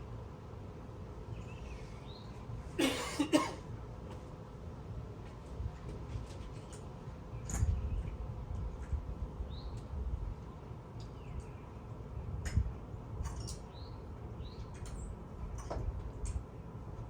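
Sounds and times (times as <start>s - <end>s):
steady low hum: 0.0s - 17.0s
person coughing: 2.8s - 3.6s.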